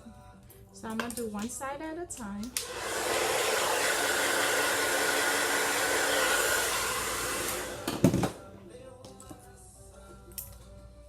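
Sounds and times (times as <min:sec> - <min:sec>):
hair dryer blowing: 0:02.5 - 0:08.4.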